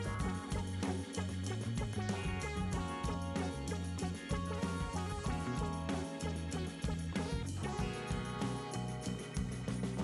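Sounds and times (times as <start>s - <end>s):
instrumental music with guitar: 0.0s - 10.0s.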